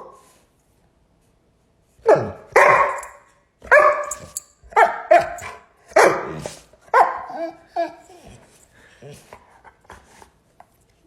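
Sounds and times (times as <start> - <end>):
dog barking: 2.0 - 7.4.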